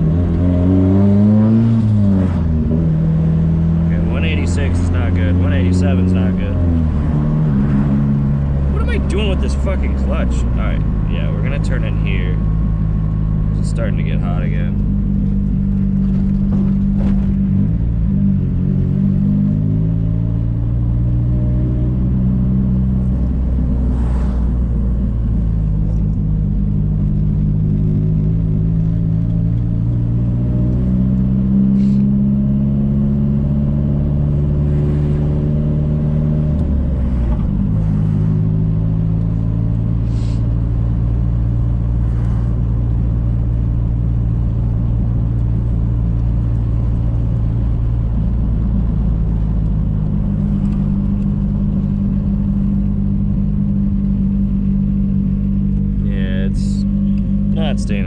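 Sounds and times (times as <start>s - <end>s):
car engine running: 0.0s - 58.0s.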